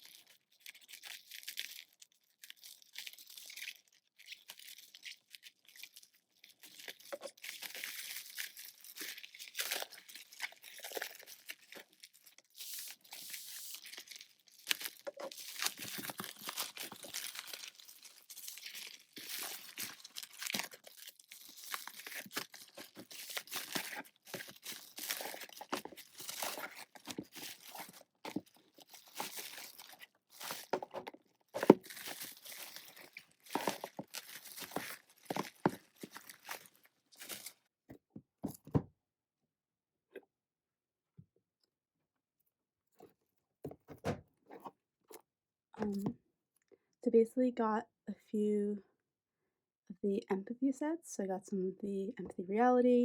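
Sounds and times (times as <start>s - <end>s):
packaging tearing and rustling: 0.0s - 37.7s.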